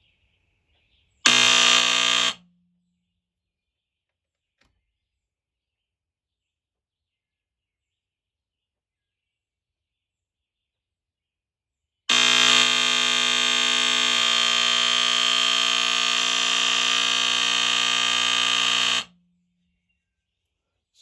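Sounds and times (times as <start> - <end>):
smoke alarm tone: 1.3 - 2.4, 12.1 - 19.2.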